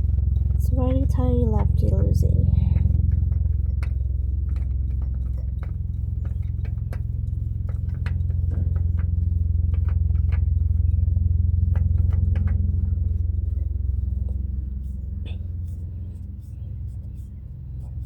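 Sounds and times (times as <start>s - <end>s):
steady low rumble: 0.0s - 18.0s
clicks and taps of hands: 2.8s - 12.9s.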